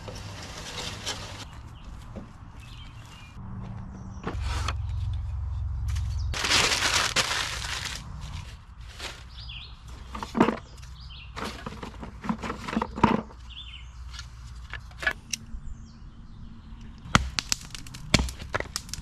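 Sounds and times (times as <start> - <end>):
dry wood snapping and cracking: 17.0 - 19.0.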